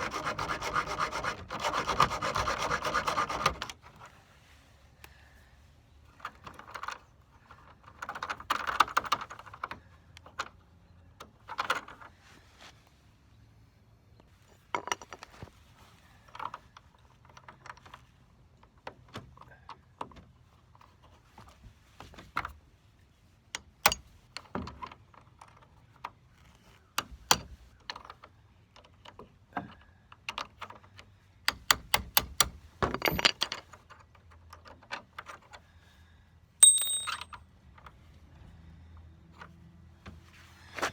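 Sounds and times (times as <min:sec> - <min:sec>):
hand tool clicks and knocks: 0:31.5 - 0:33.6, 0:36.6 - 0:37.4
hand tools scraping: 0:32.8 - 0:33.6.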